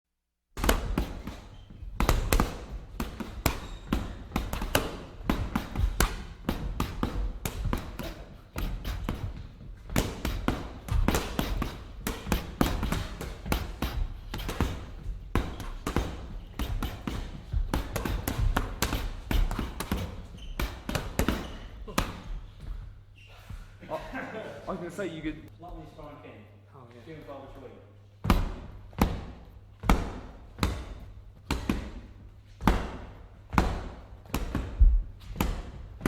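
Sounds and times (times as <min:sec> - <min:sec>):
punches on a punching bag: 0:00.6 - 0:22.3, 0:28.2 - 0:36.0.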